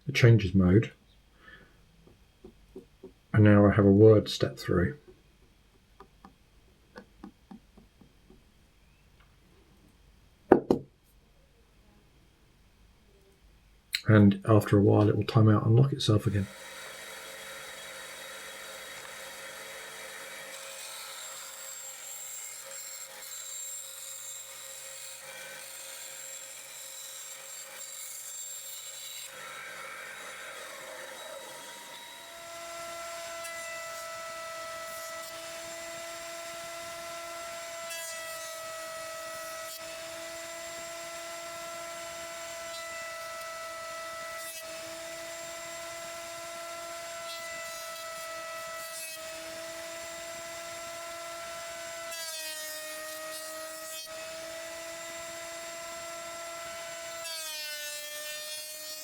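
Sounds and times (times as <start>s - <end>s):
power tool working wood: 16.3s - 59.0s.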